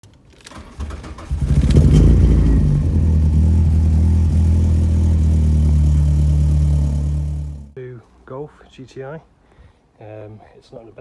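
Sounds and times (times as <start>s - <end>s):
car engine starting and idling: 0.4s - 7.8s.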